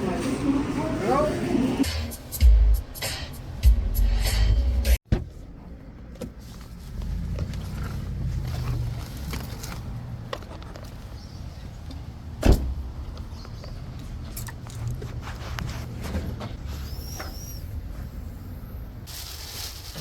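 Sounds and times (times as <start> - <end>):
car interior rumble: 5.1 - 19.1
loud thump: 12.4 - 12.8.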